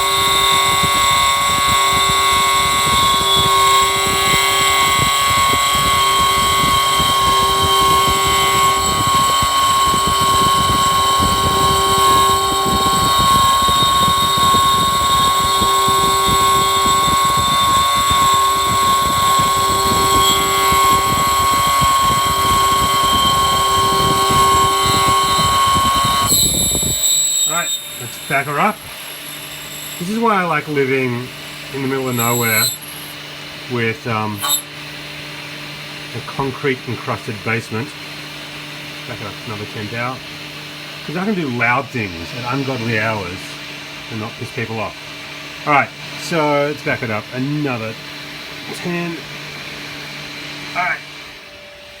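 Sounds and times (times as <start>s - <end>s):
stepper motor low tone: 0.0s - 29.0s
metal lathe cutting whine: 0.0s - 52.0s.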